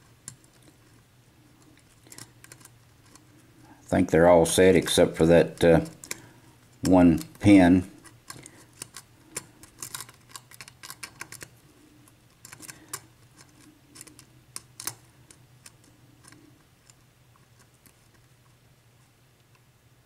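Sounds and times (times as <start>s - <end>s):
lock pick clicking and scraping: 1.6s - 3.3s, 5.5s - 7.4s, 8.0s - 11.5s, 12.1s - 18.0s.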